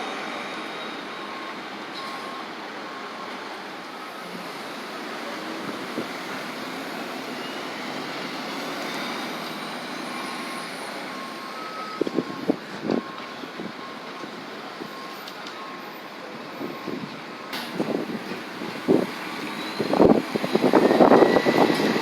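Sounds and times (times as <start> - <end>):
bus engine running: 16.1 - 22.0.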